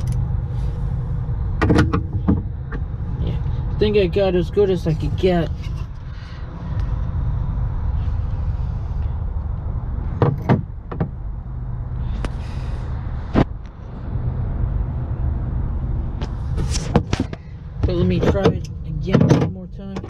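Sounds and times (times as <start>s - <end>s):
low rumble: 0.0s - 19.8s.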